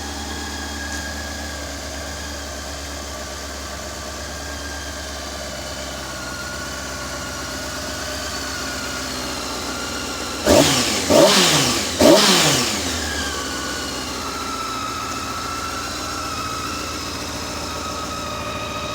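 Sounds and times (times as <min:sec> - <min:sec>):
motorcycle engine idling and revving: 0:00.0 - 0:18.9.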